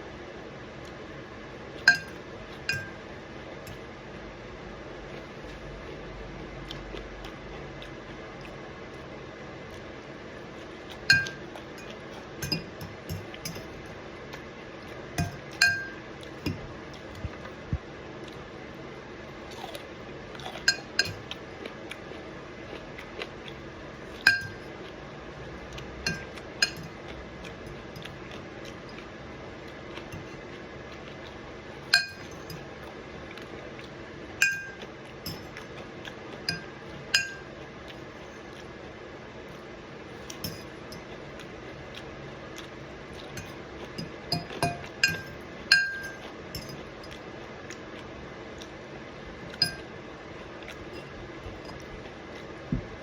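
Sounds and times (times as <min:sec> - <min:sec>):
utensil clinking on glass dish: 0:01.9 - 0:03.0, 0:11.1 - 0:14.0, 0:15.2 - 0:16.6, 0:20.6 - 0:21.2, 0:24.2 - 0:24.7, 0:26.0 - 0:27.0, 0:31.9 - 0:32.6, 0:34.4 - 0:35.6, 0:36.5 - 0:37.5, 0:40.3 - 0:41.1, 0:43.4 - 0:47.2, 0:49.6 - 0:49.9.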